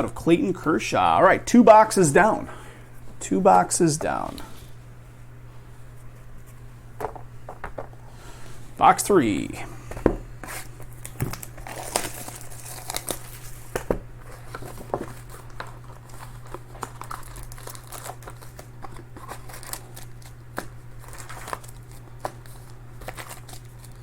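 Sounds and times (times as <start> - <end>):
steady low hum: 0.0 - 24.0
plastic wrappers tearing and crinkling: 10.5 - 24.0.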